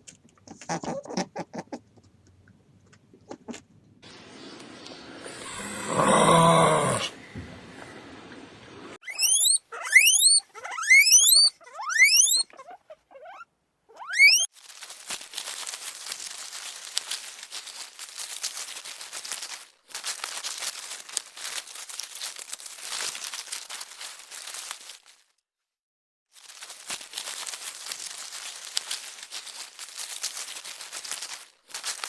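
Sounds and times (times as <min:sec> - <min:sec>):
crinkling rustling noise: 0:00.0 - 0:04.3, 0:14.4 - 0:25.5, 0:26.3 - 0:32.0
small animal squealing: 0:00.5 - 0:01.8, 0:09.0 - 0:14.5.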